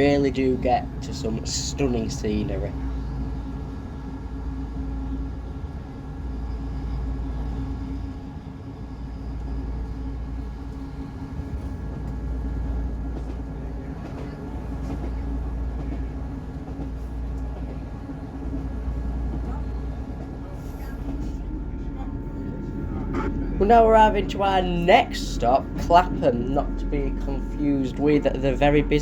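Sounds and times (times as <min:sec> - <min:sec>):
train rumbling on rails: 0:00.0 - 0:29.0.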